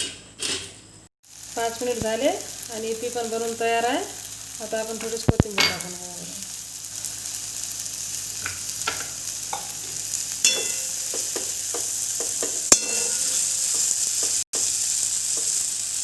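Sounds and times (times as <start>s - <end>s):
noodles sizzling in a pan: 1.2s - 16.0s
metal clank with ring: 10.4s - 11.2s, 12.7s - 13.6s
metal spoon scraping pan: 10.4s - 14.4s.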